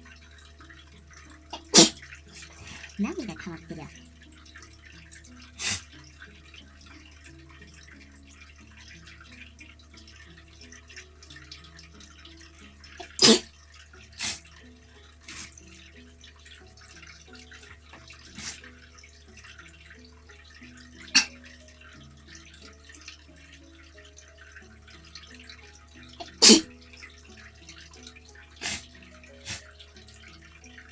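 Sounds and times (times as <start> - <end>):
quiet background music: 0.0 - 30.9
person sneezing: 1.7 - 2.0, 13.2 - 13.5, 26.4 - 26.6.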